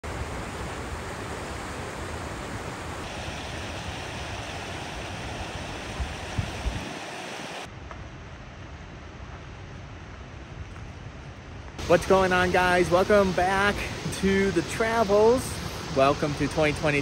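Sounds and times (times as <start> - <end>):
waterfall rushing: 0.1 - 7.7, 11.8 - 17.0.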